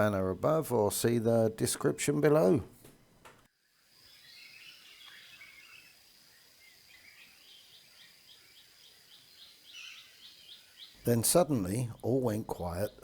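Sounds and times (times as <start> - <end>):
thin high insect whine: 3.5 - 11.0
bird chirps: 4.0 - 13.0
birds warbling: 4.0 - 13.0.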